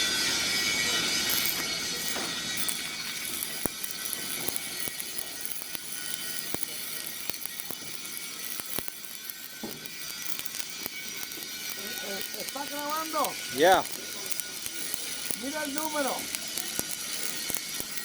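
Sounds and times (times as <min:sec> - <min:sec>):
welding arc crackling and popping: 0:00.0 - 0:18.0.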